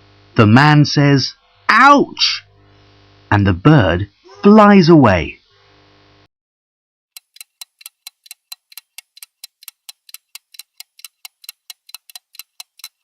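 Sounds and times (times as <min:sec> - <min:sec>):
clock ticking fast: 0:07.1 - 0:13.0.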